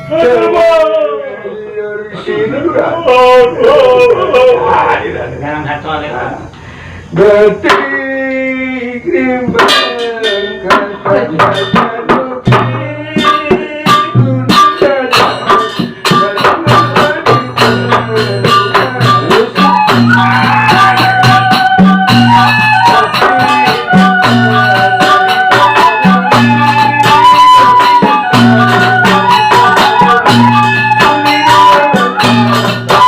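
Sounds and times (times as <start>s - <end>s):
fast percussion clatter: 9.5s - 33.0s
wavering high melody: 14.6s - 33.0s.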